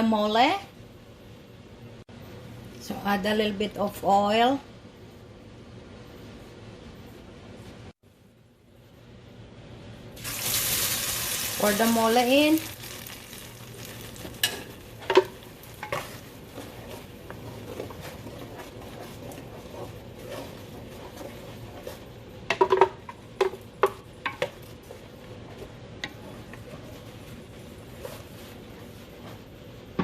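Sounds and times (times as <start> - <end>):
paste sizzling in hot oil: 10.2 - 22.1
spoon scraping and knocking pot: 14.2 - 27.0.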